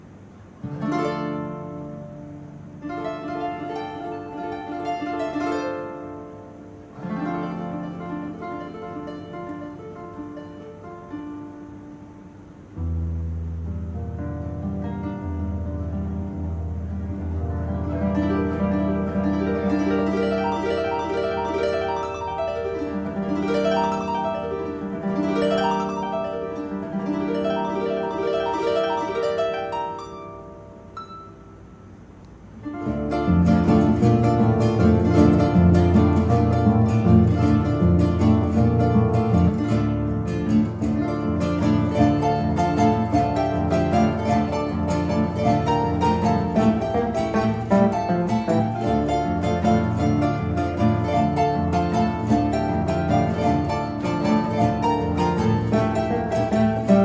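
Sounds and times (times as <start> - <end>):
harp plucked notes: 0.6 - 57.0.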